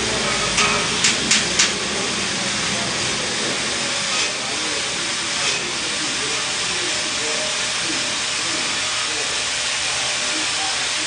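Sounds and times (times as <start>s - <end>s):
welding arc crackling and hissing: 0.0s - 11.0s
welding arc sharp pops: 0.6s - 1.8s.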